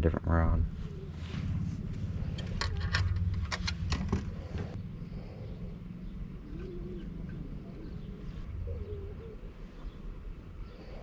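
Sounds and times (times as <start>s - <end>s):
dove cooing: 0.8s - 3.0s, 4.6s - 11.0s.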